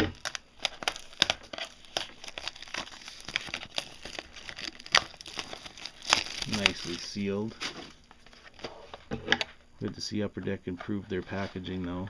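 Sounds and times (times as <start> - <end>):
plastic wrapping crackling: 0.0 - 8.9.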